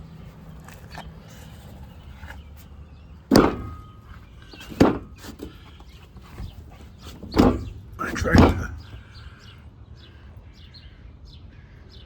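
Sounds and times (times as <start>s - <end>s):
low steady hum: 0.0s - 9.4s
loud knocks: 3.3s - 5.6s, 6.2s - 9.0s.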